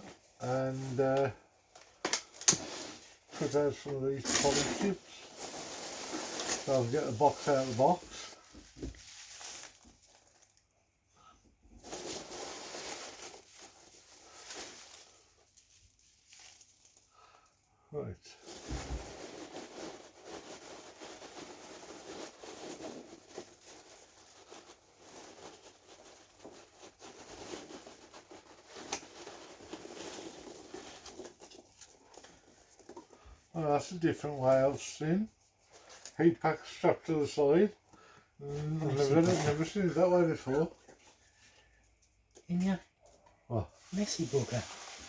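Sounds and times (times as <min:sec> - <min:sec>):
packing chips and cardboard rustling: 0:00.1 - 0:10.7, 0:11.8 - 0:17.3, 0:18.4 - 0:41.6, 0:43.8 - 0:45.0
hands rummaging packing chips: 0:18.4 - 0:33.2.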